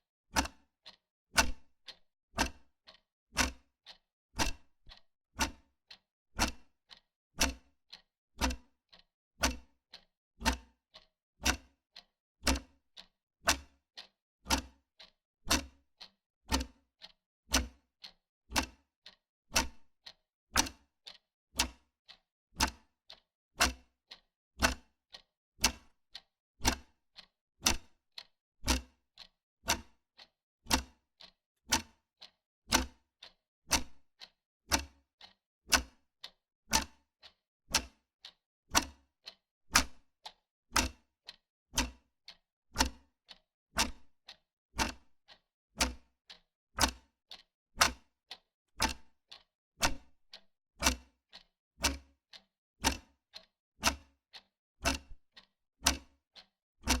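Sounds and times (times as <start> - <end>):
wall clock ticking: 18.6 - 21.8, 24.6 - 25.9, 26.6 - 29.8, 30.7 - 36.0, 36.7 - 41.9, 42.8 - 44.1, 44.8 - 46.0, 46.8 - 51.4, 52.4 - 56.5.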